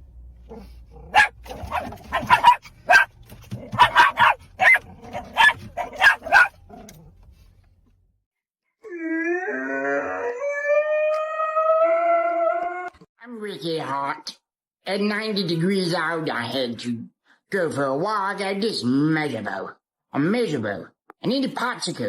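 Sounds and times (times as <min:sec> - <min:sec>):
dog barking: 0:00.5 - 0:06.7
dog howling: 0:08.8 - 0:13.0.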